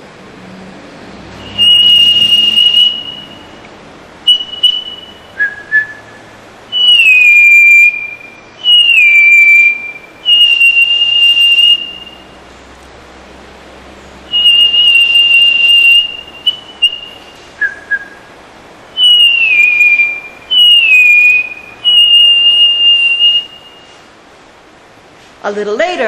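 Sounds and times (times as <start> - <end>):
person whistling bird call: 1.4 - 3.5, 4.3 - 12.3, 14.3 - 18.2, 19.0 - 24.0.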